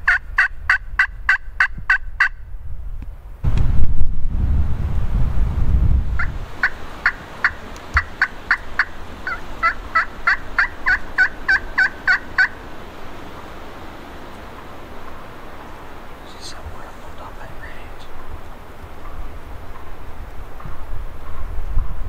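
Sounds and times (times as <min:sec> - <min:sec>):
turkey yelping: 0:00.0 - 0:02.4, 0:06.2 - 0:12.7.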